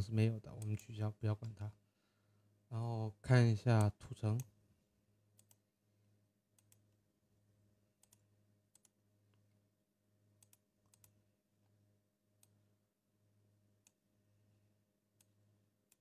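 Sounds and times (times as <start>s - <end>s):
faint low hum: 0.0s - 16.0s
computer mouse clicks: 0.6s - 1.6s, 5.4s - 5.6s, 6.5s - 6.9s, 8.0s - 9.4s, 10.4s - 11.2s, 15.2s - 16.0s.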